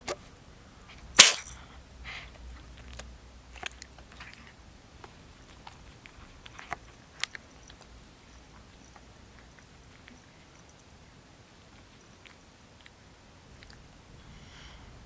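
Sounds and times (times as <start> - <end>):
cat sneezing: 1.2 - 1.6.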